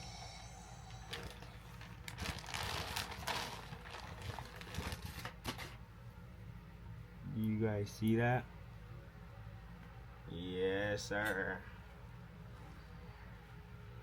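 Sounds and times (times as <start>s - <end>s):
packaging and fabric rustling: 1.1s - 5.8s.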